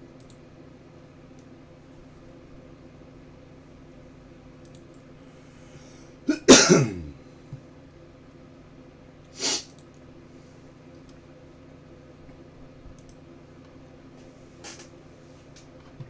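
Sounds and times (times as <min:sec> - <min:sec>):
person coughing or sneezing: 0:06.3 - 0:07.2
breathy puff: 0:09.4 - 0:09.7.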